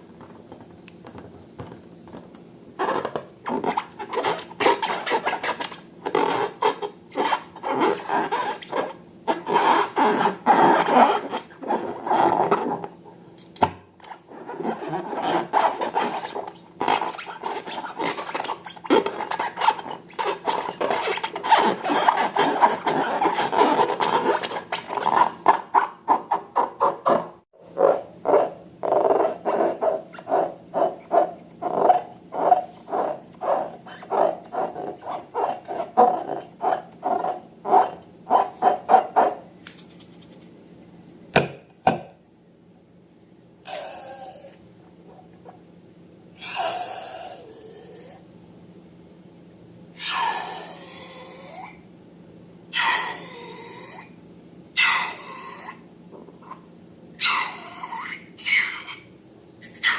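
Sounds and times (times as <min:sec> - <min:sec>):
slime rubbing and scraping: 0:02.8 - 0:12.9, 0:14.1 - 0:39.1.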